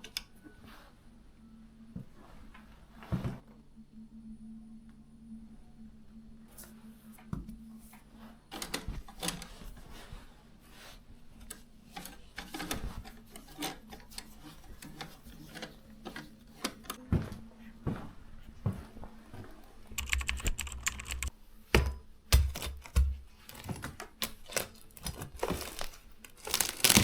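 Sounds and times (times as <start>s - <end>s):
low hum: 1.1s - 8.5s.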